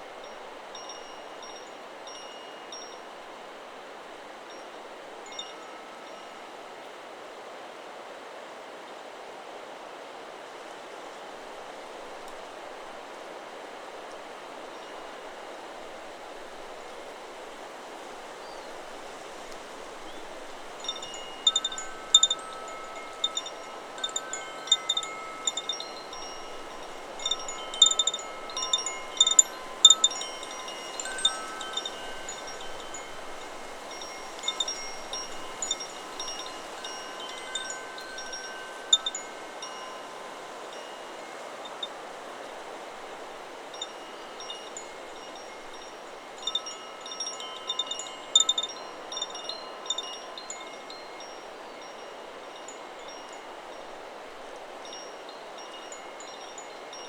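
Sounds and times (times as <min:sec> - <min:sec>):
wind through trees: 0:00.0 - 0:57.0
wind chime ringing: 0:00.2 - 0:03.3, 0:19.7 - 0:42.7, 0:43.6 - 0:54.0.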